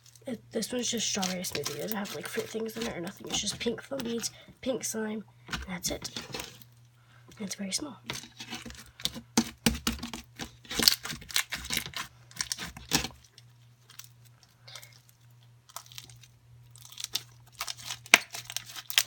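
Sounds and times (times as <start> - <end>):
foam bead slime crackling: 0.0 - 4.3, 10.7 - 19.0
low steady hum: 0.0 - 19.0.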